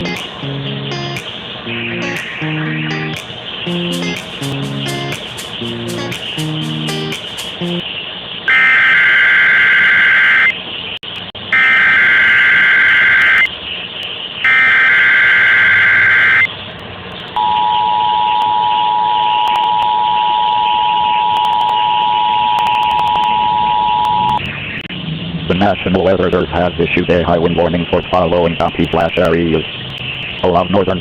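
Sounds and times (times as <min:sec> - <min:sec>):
warbling data bursts: 0:14.4 - 0:16.5
two-tone attention signal: 0:17.4 - 0:24.4.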